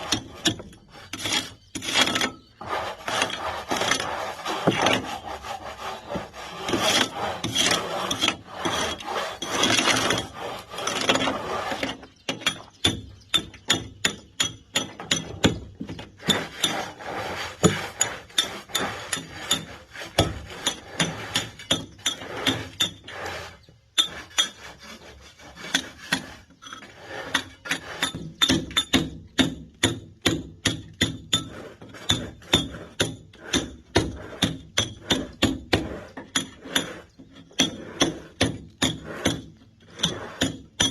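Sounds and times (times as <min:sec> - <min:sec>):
rough rasping and scraping: 0:00.0 - 0:40.9
hammer striking chisel: 0:12.3 - 0:16.9, 0:27.2 - 0:40.9.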